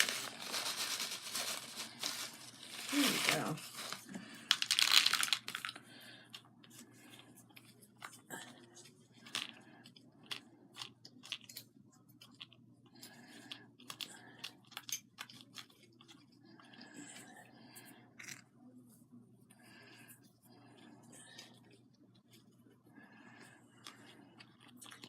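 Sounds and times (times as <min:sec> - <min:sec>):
crinkling rustle: 0:00.0 - 0:05.8.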